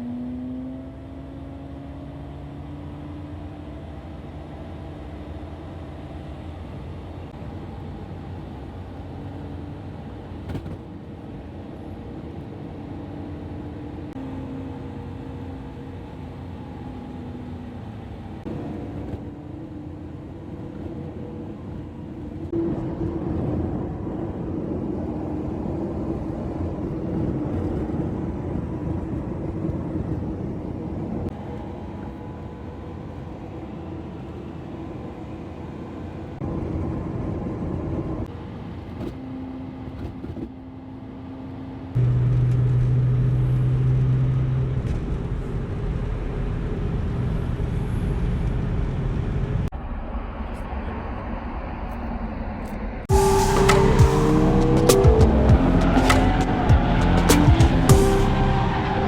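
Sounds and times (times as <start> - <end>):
car engines droning: 0.0 - 59.0
strong low hum: 53.1 - 59.0.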